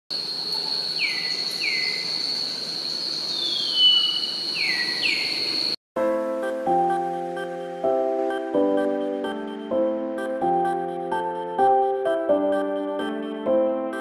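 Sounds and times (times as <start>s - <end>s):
high-pitched insect drone: 0.1s - 5.8s
music with held notes: 6.0s - 14.0s.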